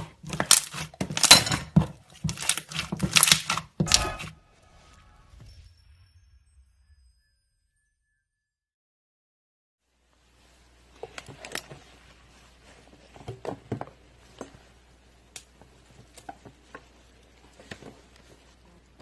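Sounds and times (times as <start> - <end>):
slime squelching by hand: 0.0 - 4.3.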